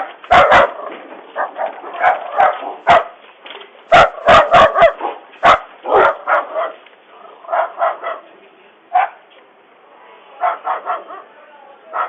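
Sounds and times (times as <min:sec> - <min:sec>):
dog barking: 0:00.0 - 0:03.2, 0:03.9 - 0:08.3, 0:08.9 - 0:09.2, 0:10.4 - 0:12.0.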